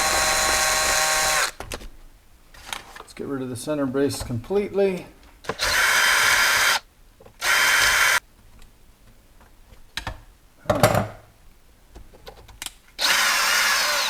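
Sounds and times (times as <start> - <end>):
cordless power driver spinning: 0.0 - 1.7, 5.4 - 6.8, 7.4 - 8.2, 13.0 - 14.0.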